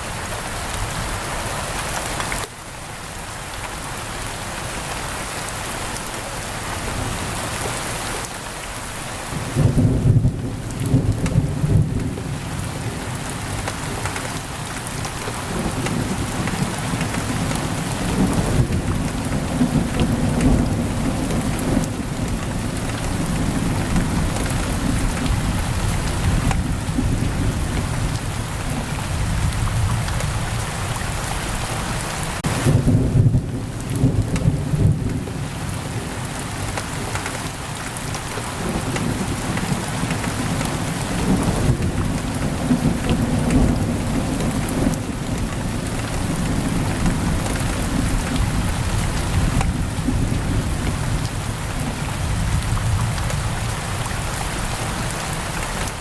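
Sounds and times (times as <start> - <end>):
heavy rain on a window: 0.0 - 56.0
thunder rumbling: 38.4 - 54.0.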